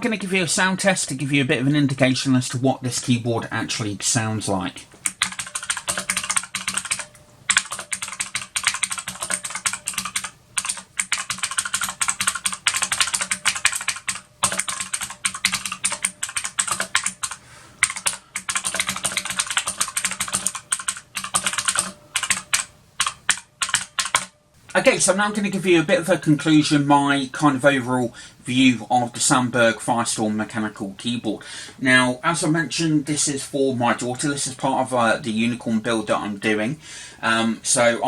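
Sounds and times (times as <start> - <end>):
mechanical keyboard typing: 5.0 - 24.3.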